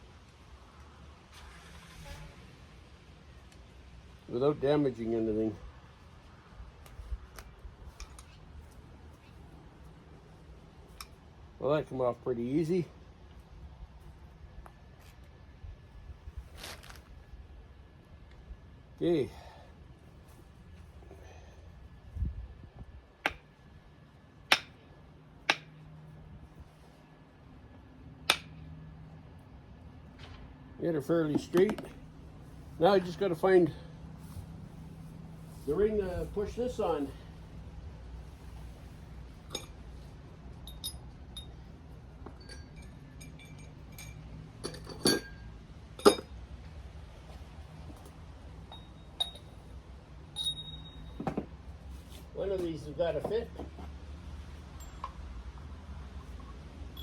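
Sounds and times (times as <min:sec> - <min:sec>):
metal tools clinking together: 0:39.5 - 0:39.8, 0:40.5 - 0:41.6, 0:42.3 - 0:46.3, 0:48.7 - 0:49.6, 0:50.4 - 0:51.2.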